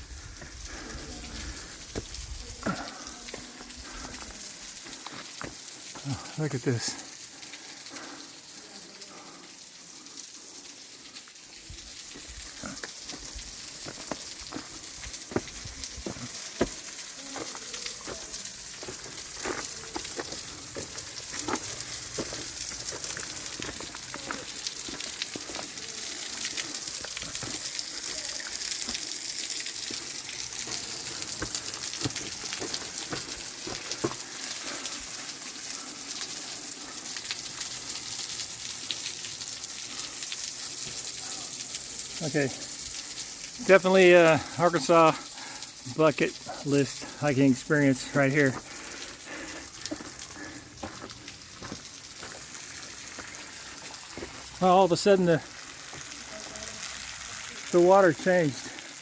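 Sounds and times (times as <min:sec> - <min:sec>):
waterfall spray on rocks: 0:00.0 - 0:59.0
water drops splatting: 0:12.1 - 0:34.8.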